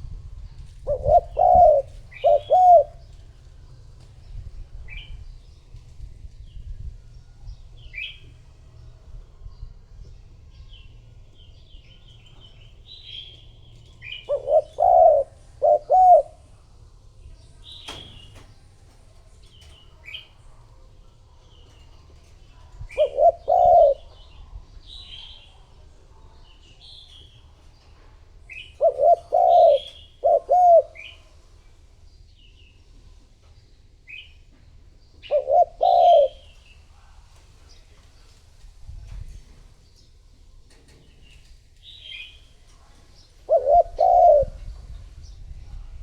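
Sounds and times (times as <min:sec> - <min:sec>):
small birds chirping: 0:00.2 - 0:46.0
dove cooing: 0:00.6 - 0:03.4, 0:13.8 - 0:16.6, 0:22.2 - 0:24.4, 0:28.5 - 0:31.4, 0:35.2 - 0:36.8, 0:43.2 - 0:44.9.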